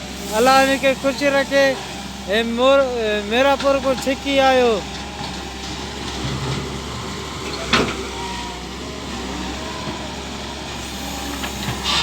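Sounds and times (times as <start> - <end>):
machinery engine running: 0.0 - 12.0.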